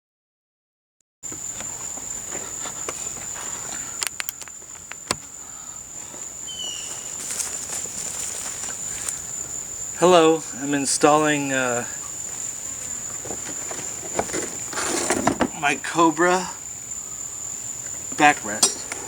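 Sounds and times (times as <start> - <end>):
high-pitched insect trill: 1.3 - 19.0
sharp clicks and knocks: 4.0 - 5.3, 18.6 - 19.0.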